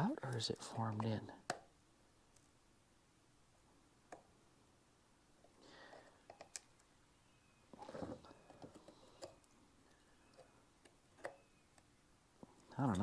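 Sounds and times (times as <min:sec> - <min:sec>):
small clicks: 0:06.0 - 0:06.9.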